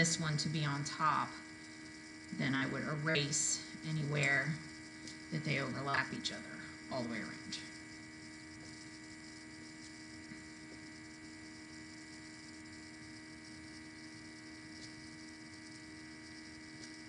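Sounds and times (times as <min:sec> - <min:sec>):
faint electrical hum: 0:00.0 - 0:17.0.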